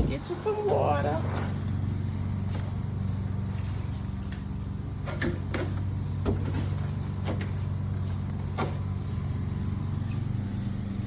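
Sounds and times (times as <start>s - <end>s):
low motor hum: 0.0s - 11.0s.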